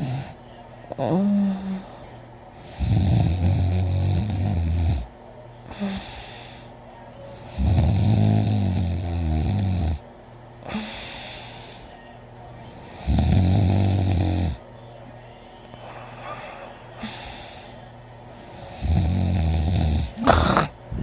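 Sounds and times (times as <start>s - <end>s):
person snoring: 2.7s - 5.1s, 7.5s - 10.0s, 12.9s - 14.6s, 18.5s - 20.8s
breathing: 5.7s - 6.8s, 10.6s - 12.1s, 15.8s - 18.8s.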